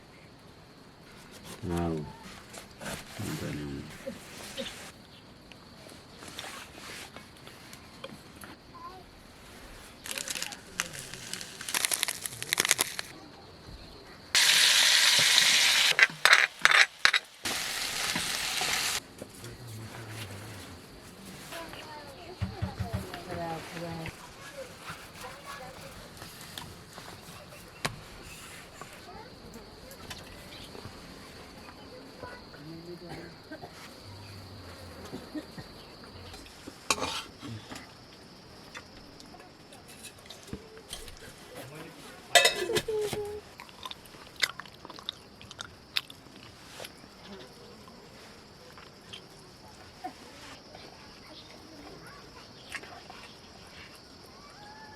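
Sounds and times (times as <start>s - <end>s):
food sizzling in hot oil: 14.4s - 19.0s, 42.3s - 42.7s
utensils clattering: 15.4s - 18.8s, 36.9s - 37.3s, 42.3s - 43.0s
utensils clinking on metal plate: 15.9s - 17.4s, 36.9s - 37.3s, 42.3s - 42.9s.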